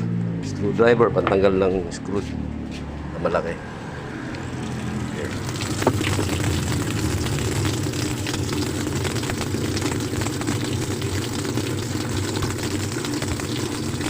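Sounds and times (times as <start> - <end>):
washing machine motor hum: 3.8 - 14.0.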